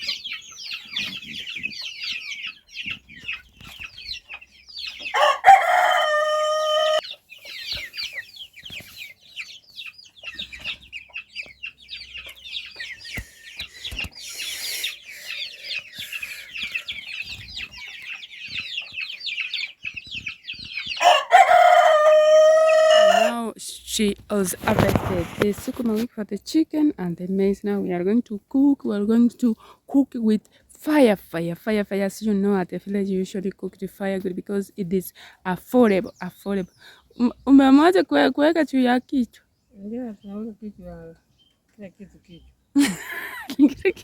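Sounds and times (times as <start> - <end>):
chickens clucking and chirping: 0.0 - 44.0
rooster crowing: 5.1 - 7.0, 21.0 - 23.3.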